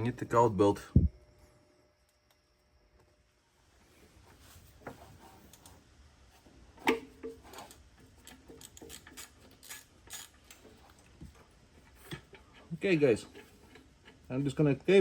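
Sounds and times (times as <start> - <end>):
hand tools clicking on metal: 7.3 - 11.1.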